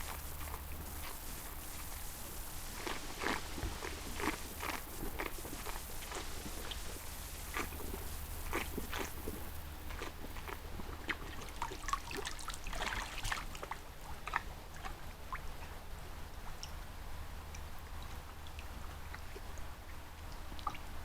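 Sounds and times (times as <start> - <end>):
animal rustling in vegetation: 0.0 - 10.7
steady low hum: 0.0 - 12.0.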